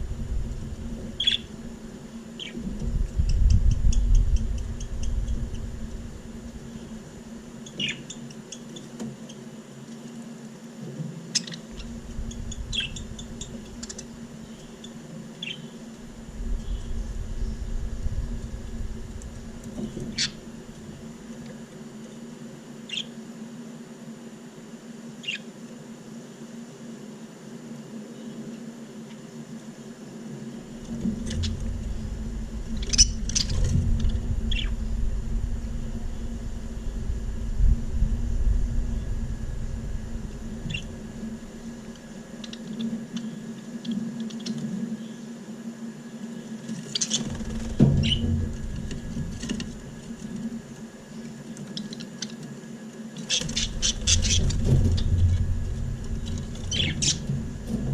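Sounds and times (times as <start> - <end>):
low rumble: 0.0 - 7.5, 11.7 - 14.7, 15.9 - 21.4, 30.6 - 42.6, 47.3 - 50.7, 53.4 - 57.9
low hum: 0.0 - 8.0, 11.7 - 21.7, 30.5 - 43.0, 47.2 - 51.4, 53.4 - 57.9
budgerigars chirping: 1.2 - 1.5, 11.4 - 14.0, 32.8 - 33.8, 34.5 - 34.8, 53.3 - 55.0, 56.7 - 57.3.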